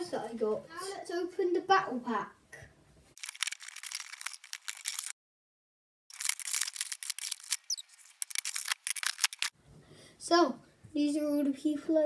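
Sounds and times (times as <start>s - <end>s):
packaging crackling and rustling: 3.2s - 5.2s, 6.1s - 9.5s.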